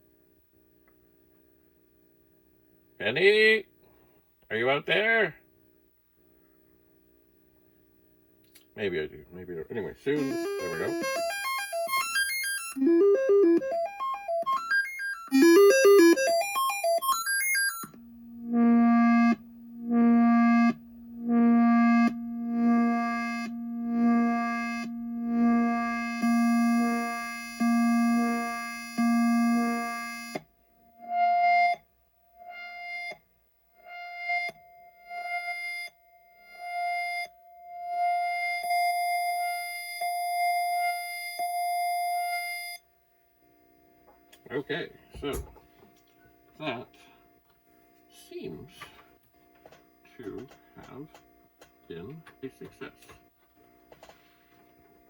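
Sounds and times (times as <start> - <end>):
synth test tones: 10.1 - 31.8.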